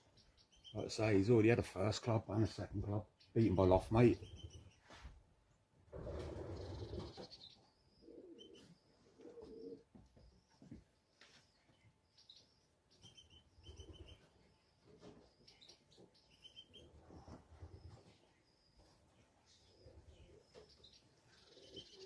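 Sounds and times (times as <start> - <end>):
high bird chirps: 3.2 - 4.9, 6.6 - 8.9, 11.8 - 14.6, 15.4 - 18.9, 19.5 - 22.0
pigeon cooing: 6.0 - 10.0, 21.3 - 22.0.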